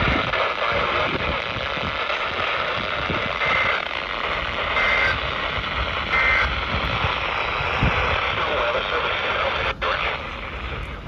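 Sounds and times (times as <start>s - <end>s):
radio static hiss: 0.0s - 11.0s
digital data tone bursts: 3.0s - 8.2s.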